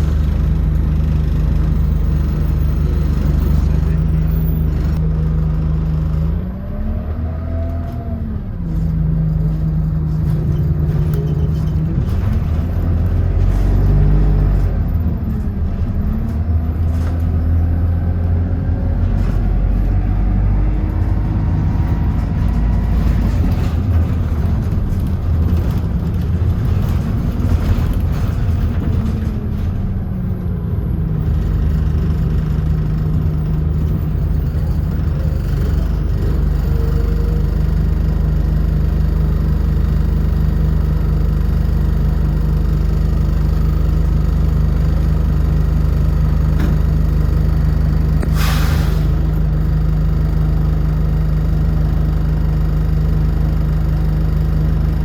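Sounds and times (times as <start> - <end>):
bus engine running: 0.0 - 55.0.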